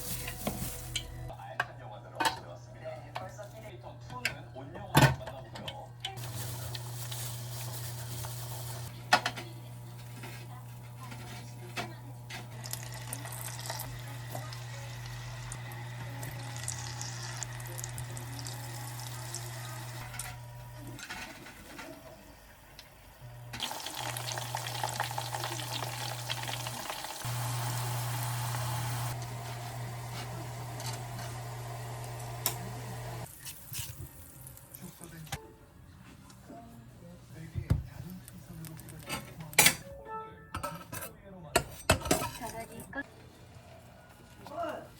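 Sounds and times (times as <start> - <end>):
food sizzling in a pan: 6.2 - 8.9, 12.5 - 20.6, 23.5 - 34.6.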